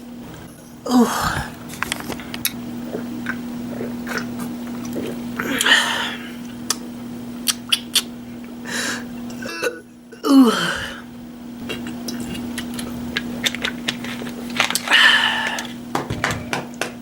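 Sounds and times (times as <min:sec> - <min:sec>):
steady low hum: 0:00.0 - 0:17.0
throaty vocal sound: 0:00.8 - 0:01.7, 0:02.8 - 0:06.5, 0:08.7 - 0:12.4
mouth chewing smacks: 0:07.4 - 0:08.6.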